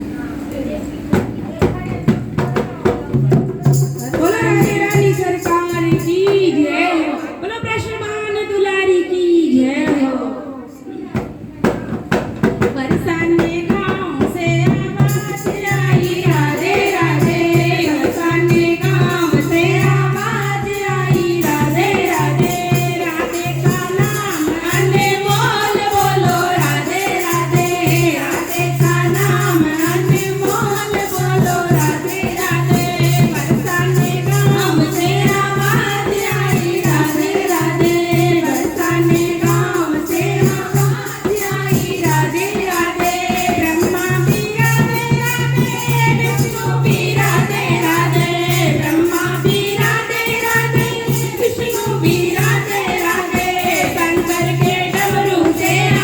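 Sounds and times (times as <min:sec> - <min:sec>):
jingling hand percussion: 0:01.2 - 0:07.9, 0:11.1 - 0:56.0.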